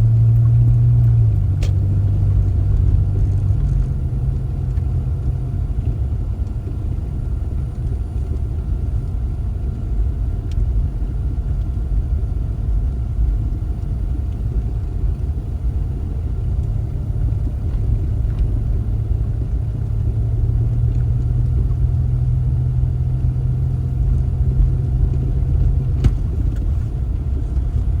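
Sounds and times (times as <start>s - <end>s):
car engine rumbling: 0.0s - 28.0s.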